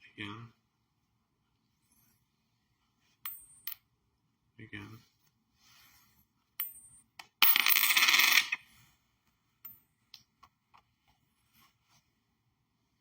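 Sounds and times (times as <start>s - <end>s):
coin rattling on hard surface: 6.6s - 8.6s
coins clicking: 7.4s - 8.6s.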